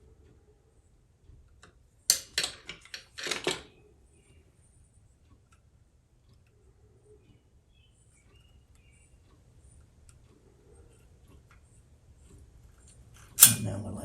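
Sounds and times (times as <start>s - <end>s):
rattle of small metal parts: 2.1s - 3.7s
low steady hum: 10.9s - 14.0s.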